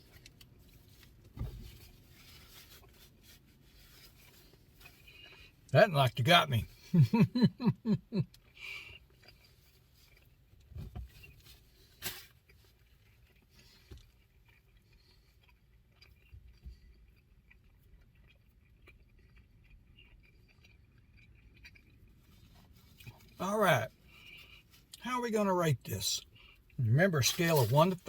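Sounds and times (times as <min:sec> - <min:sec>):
man chewing: 0:02.1 - 0:05.6, 0:06.7 - 0:25.0.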